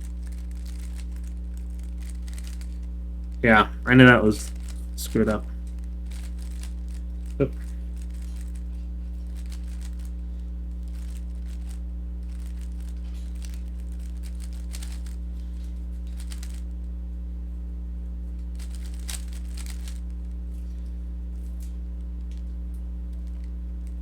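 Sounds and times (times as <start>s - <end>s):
puzzle cube clacking: 0.0s - 5.4s, 6.1s - 8.7s, 9.3s - 10.1s, 10.9s - 15.2s, 16.2s - 16.6s, 18.6s - 20.0s
low electrical hum: 0.0s - 24.0s.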